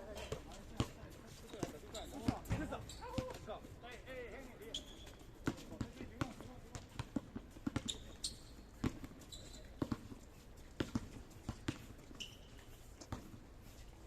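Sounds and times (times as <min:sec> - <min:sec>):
sneaker squeaks: 0:00.1 - 0:03.5, 0:04.4 - 0:05.7, 0:07.7 - 0:10.2, 0:10.8 - 0:13.4
basketball bouncing on court: 0:00.3 - 0:03.4, 0:04.8 - 0:10.2, 0:10.8 - 0:12.4, 0:13.1 - 0:13.4.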